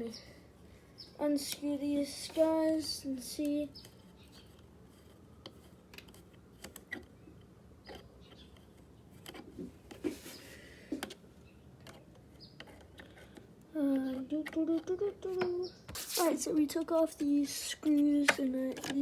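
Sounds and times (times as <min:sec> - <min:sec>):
short scrape: 0:15.9 - 0:16.4.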